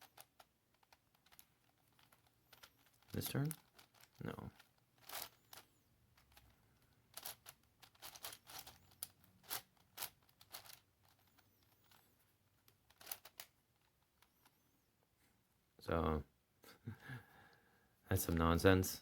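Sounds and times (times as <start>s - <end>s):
puzzle pieces clicking: 0.0s - 14.5s.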